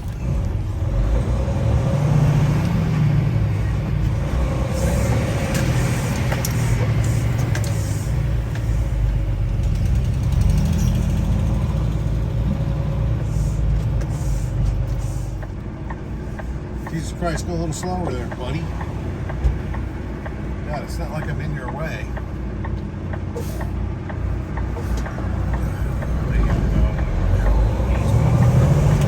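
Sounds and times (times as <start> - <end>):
truck diesel engine pulling away: 0.0 - 15.8, 24.8 - 29.0.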